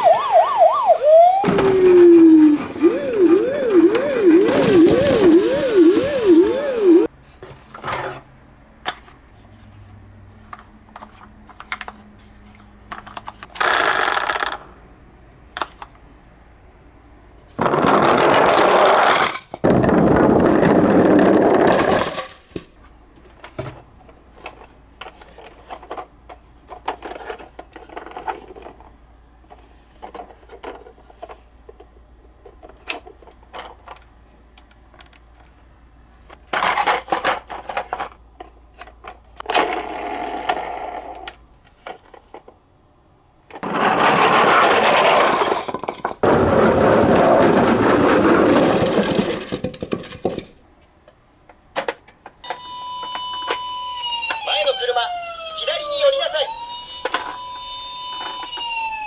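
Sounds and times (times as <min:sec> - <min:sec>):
toy cars rattling: 0:04.5 - 0:07.1, 0:12.9 - 0:14.7, 0:17.5 - 0:22.6, 0:24.4 - 0:28.9, 0:36.4 - 0:42.5, 0:43.5 - 0:50.6
plastic toy cars clicking: 0:12.9 - 0:14.7.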